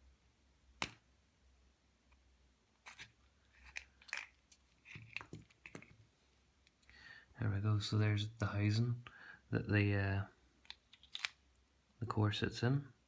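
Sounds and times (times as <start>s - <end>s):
plastic lock parts clicking: 10.6s - 11.4s.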